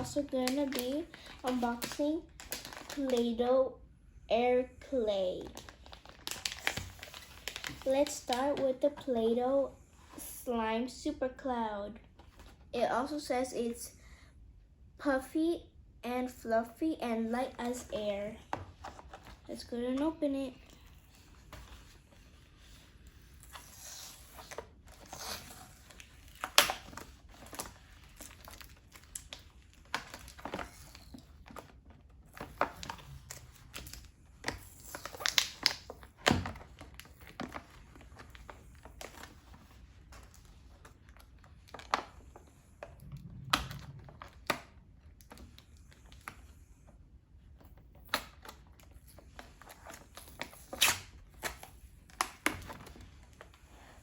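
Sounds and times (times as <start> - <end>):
packaging crinkling and tearing: 0.0 - 3.2, 5.4 - 8.6, 22.6 - 46.4.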